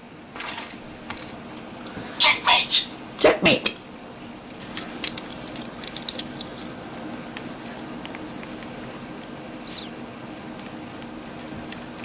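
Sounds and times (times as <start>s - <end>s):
parrot chirp: 9.6s - 10.0s.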